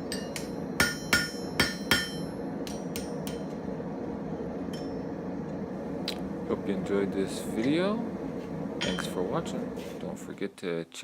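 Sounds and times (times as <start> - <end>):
hammer striking iron on anvil: 0.0 - 3.5, 4.7 - 5.0, 8.8 - 9.2.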